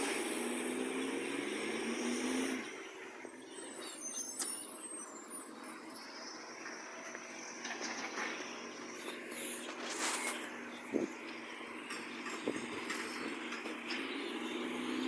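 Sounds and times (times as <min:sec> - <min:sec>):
high squeal: 0:00.0 - 0:10.6
garbage truck engine running: 0:00.0 - 0:15.0.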